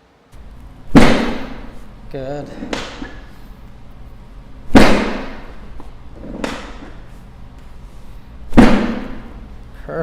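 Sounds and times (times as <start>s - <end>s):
thumps during chiropractic adjustment: 0.9s - 1.9s, 4.7s - 7.1s, 8.5s - 9.4s.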